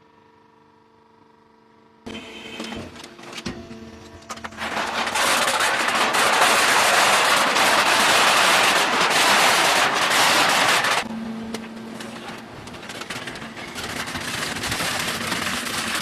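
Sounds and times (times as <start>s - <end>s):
machine humming: 2.0s - 16.0s
cans crunching in a baler: 4.1s - 16.0s.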